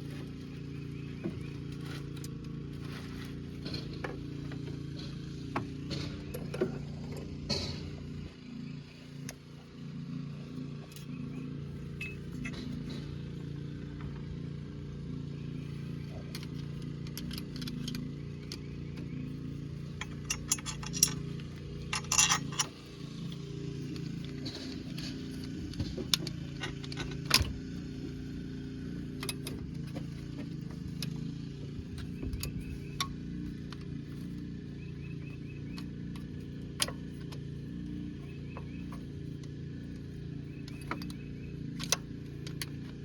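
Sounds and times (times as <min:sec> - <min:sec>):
low hum: 0:00.0 - 0:43.0
metal tools clinking: 0:10.9 - 0:13.0, 0:16.3 - 0:27.9.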